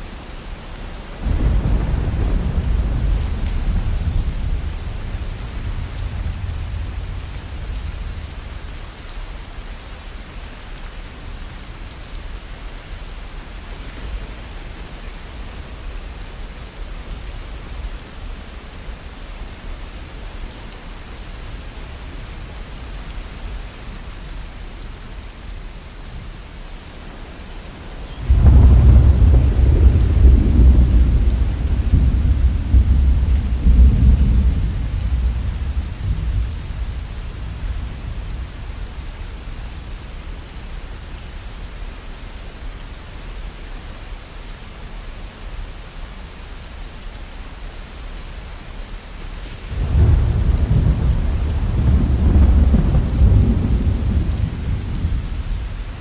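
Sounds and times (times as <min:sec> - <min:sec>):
heavy rain: 0:00.0 - 0:56.0
thunder clap and rumble: 0:01.2 - 0:08.7, 0:27.4 - 0:39.9, 0:49.5 - 0:56.0.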